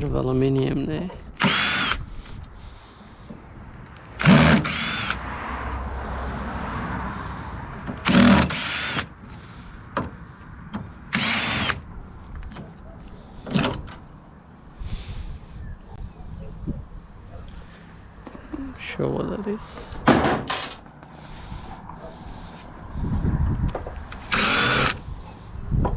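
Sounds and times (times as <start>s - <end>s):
cordless power drill whirring: 1.4s - 2.4s, 4.1s - 5.2s, 8.0s - 9.2s, 11.1s - 11.8s, 24.1s - 25.1s.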